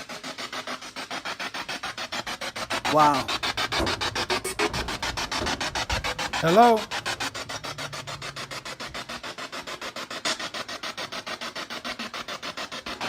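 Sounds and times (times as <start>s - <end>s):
choppy radio static bursts: 2.8s - 3.9s, 5.9s - 9.0s.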